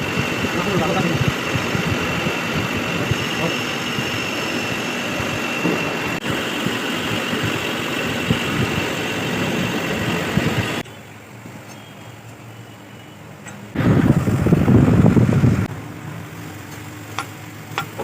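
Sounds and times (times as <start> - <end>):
metal lathe machining whine: 0.0 - 10.8.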